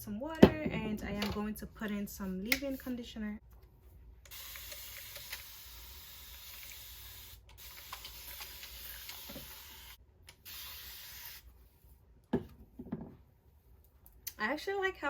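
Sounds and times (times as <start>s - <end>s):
spray bottle hissing: 4.3s - 11.5s.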